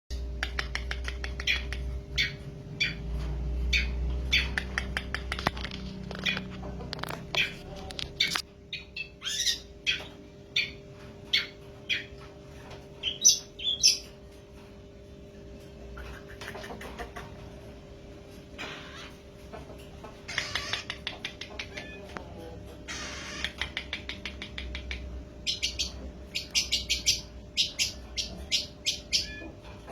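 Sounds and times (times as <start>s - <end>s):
bird singing chirps and clicks: 0.1s - 3.0s, 3.6s - 12.2s, 23.4s - 29.5s.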